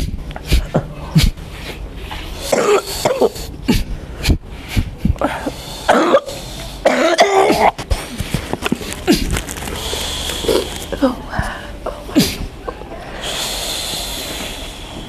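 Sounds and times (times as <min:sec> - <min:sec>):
person coughing hard: 0:02.4 - 0:03.9, 0:05.3 - 0:07.9, 0:12.0 - 0:12.5.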